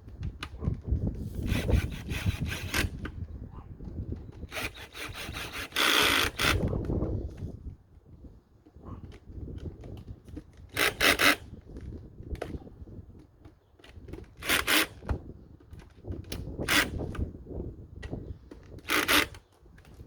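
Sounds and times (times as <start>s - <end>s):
tool rasping: 1.2s - 3.1s, 4.4s - 6.7s.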